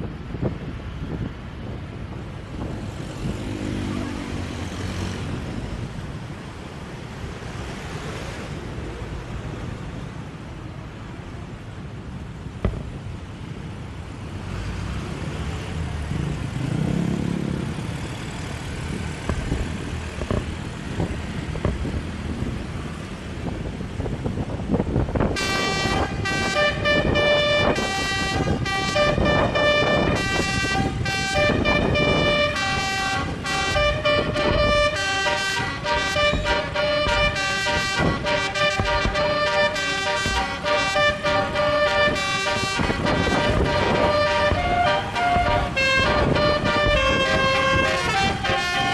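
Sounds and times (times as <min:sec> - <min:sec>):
engine and road rumble: 0:00.0 - 0:48.9
bus horn playing fast melody: 0:25.4 - 0:48.9.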